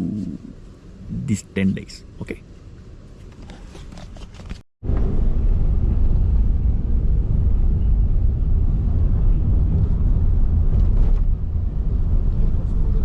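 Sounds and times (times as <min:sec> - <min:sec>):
vehicle rumbling: 0:00.0 - 0:13.0
wind buffeting microphone: 0:04.8 - 0:13.0.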